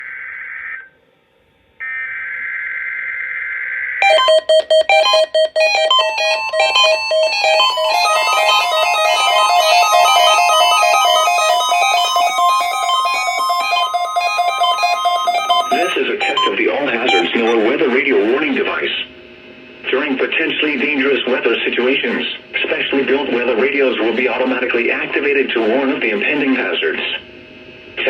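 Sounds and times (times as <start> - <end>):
music with short notes: 4.0 - 17.6.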